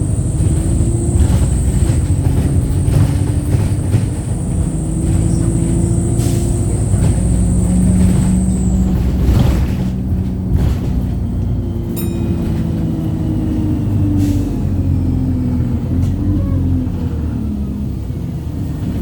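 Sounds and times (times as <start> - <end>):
bus engine droning: 0.0 - 19.0
road noise: 0.0 - 19.0
brief high ping: 12.0 - 12.8.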